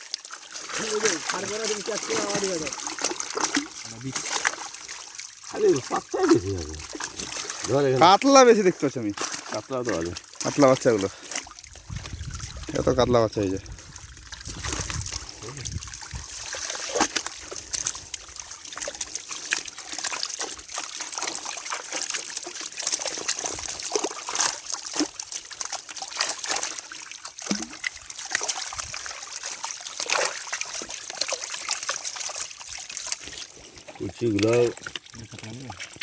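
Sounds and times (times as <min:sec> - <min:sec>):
small sharp splashes: 0:00.0 - 0:12.7, 0:13.7 - 0:36.0
water splashing and trickling: 0:00.0 - 0:36.0.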